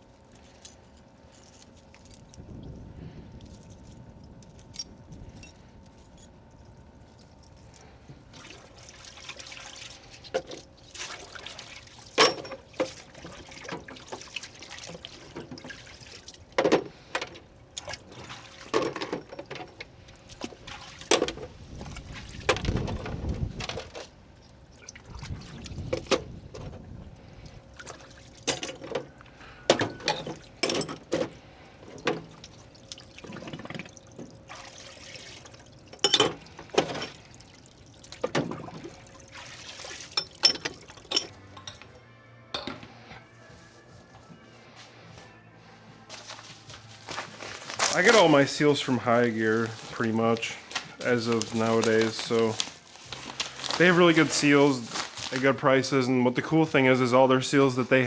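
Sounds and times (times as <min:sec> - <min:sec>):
metal parts clinking and knocking: 0:03.6 - 0:06.4, 0:29.7 - 0:31.3, 0:40.2 - 0:42.0
liquid dripping and splashing: 0:06.0 - 0:29.4, 0:30.2 - 0:41.3
rustling: 0:44.0 - 0:55.6.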